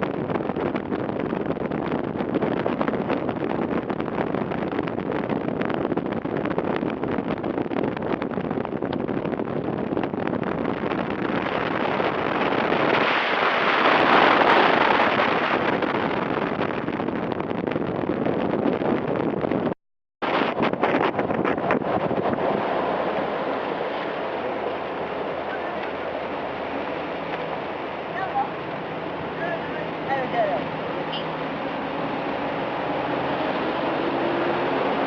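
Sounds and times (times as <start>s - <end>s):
wind buffeting microphone: 0.0s - 35.0s
flash-flood water rushing: 9.6s - 17.1s, 20.2s - 35.0s.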